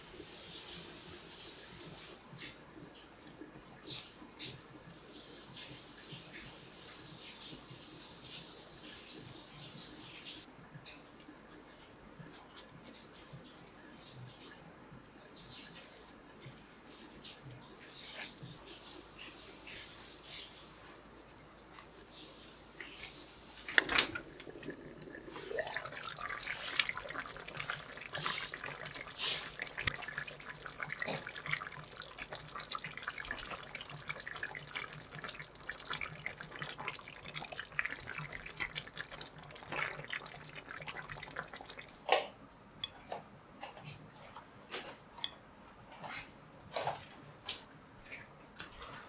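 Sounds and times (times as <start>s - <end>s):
tap water running into sink: 23.6s - 42.9s.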